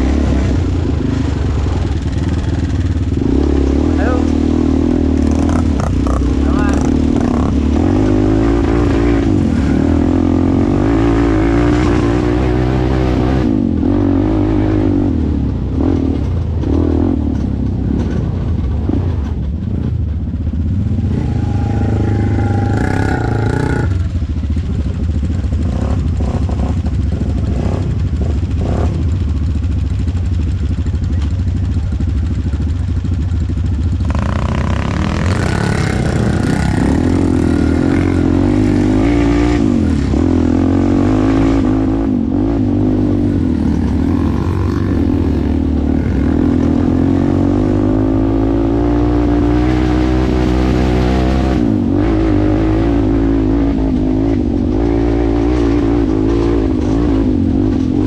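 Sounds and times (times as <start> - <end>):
atv engine running: 0.0 - 58.0.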